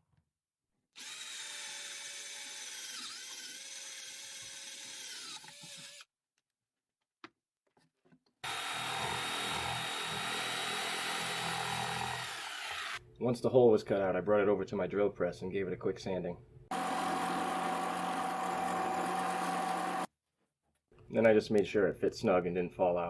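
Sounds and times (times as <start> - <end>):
power tool cutting wood: 1.0 - 6.0, 8.4 - 13.0, 16.7 - 20.1.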